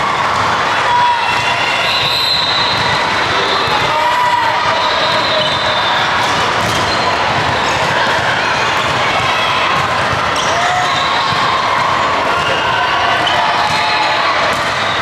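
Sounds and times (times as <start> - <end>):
many voices: 0.0 - 15.0
volleyballs bouncing and hit: 0.0 - 15.0.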